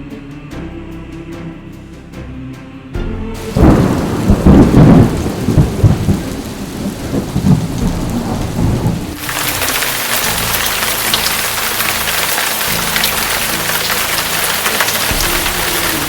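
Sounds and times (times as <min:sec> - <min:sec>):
heavy rain hissing: 0:03.4 - 0:16.0
thunder rumbling: 0:03.4 - 0:16.0.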